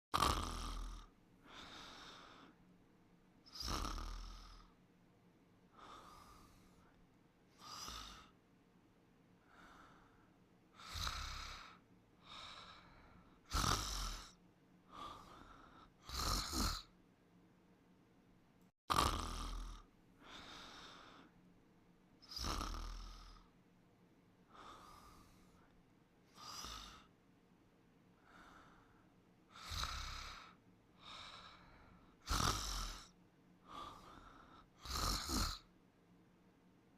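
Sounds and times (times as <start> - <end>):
person snoring: 0.1 - 2.6, 3.4 - 4.8, 5.8 - 7.0, 7.6 - 8.4, 9.4 - 16.9, 18.9 - 21.4, 22.2 - 23.5, 24.5 - 25.7, 26.3 - 27.1, 28.2 - 35.7.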